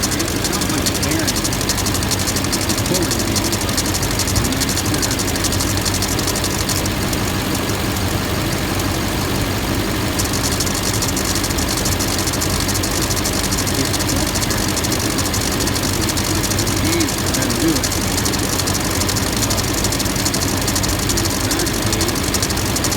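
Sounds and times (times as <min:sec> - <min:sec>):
diesel engine idling: 0:00.0 - 0:22.9
rapid clicking: 0:00.0 - 0:22.9.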